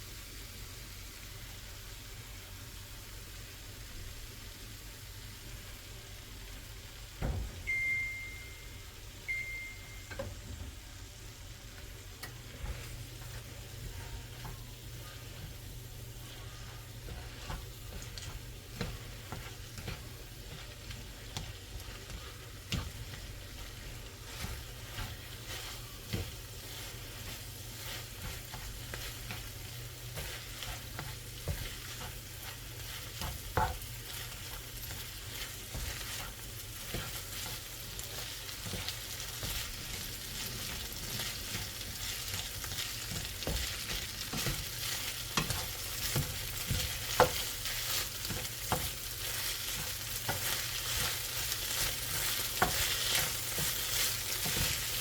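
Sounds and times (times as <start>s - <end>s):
rice sizzling in a pan: 0.0s - 55.0s
spatula scraping a pan: 12.2s - 55.0s.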